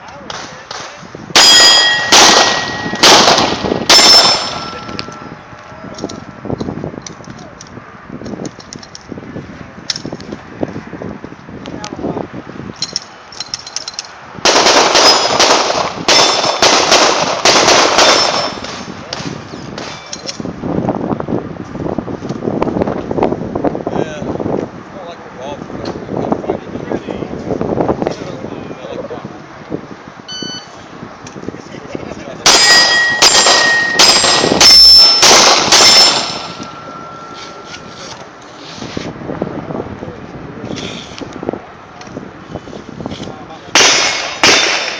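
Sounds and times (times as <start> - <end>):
pistol shots: 0.3 - 4.8, 14.5 - 20.0, 32.5 - 36.6, 43.8 - 44.9
steel targets ringing: 1.4 - 5.4, 18.0 - 18.7, 32.4 - 38.1.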